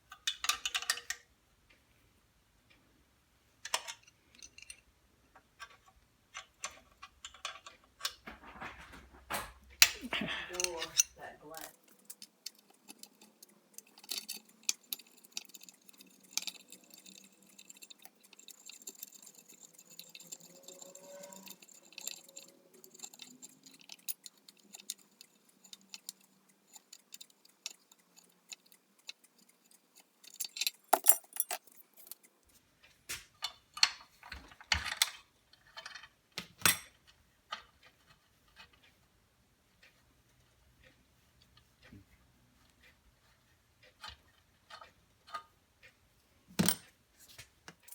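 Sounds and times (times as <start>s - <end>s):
metal tools clinking: 8.8s - 32.3s.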